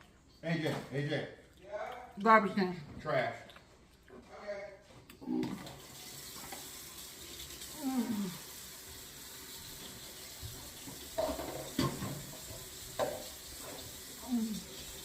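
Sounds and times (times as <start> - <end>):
tap water running: 5.4 - 15.0.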